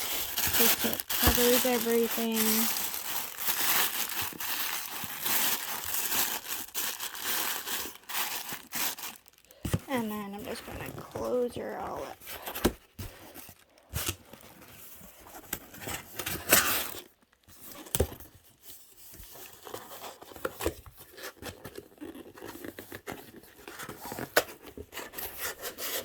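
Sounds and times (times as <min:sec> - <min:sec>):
paper and wrapping rustling: 0:00.0 - 0:26.0.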